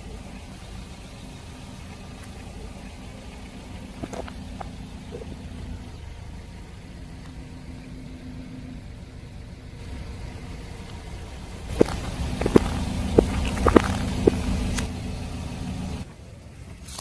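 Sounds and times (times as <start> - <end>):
car engine running slowly: 0.0 - 17.0
cracking under a tyre: 0.2 - 5.9, 10.7 - 15.4.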